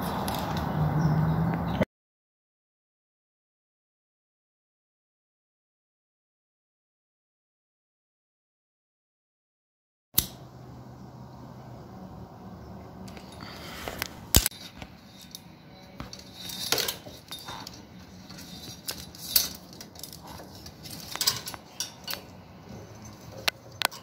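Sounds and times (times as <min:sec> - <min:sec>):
tools and metal parts clinking: 0:00.0 - 0:00.7, 0:13.1 - 0:24.0.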